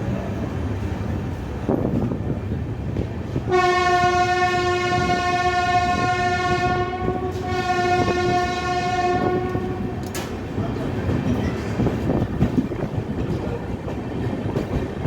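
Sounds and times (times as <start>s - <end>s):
train rumbling on track: 0.0s - 15.0s
train horn blast: 3.5s - 10.1s.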